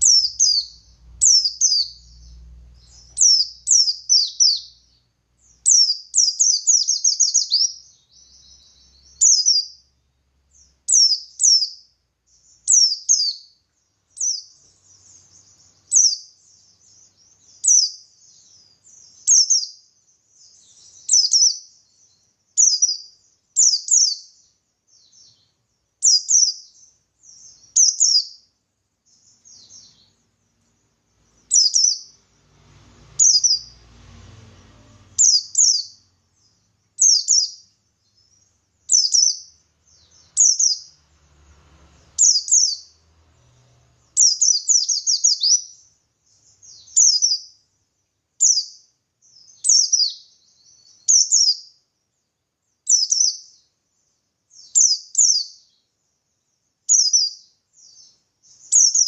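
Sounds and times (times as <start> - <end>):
faint low rumble: 0.0 - 5.9
bird chirping song: 0.0 - 59.0.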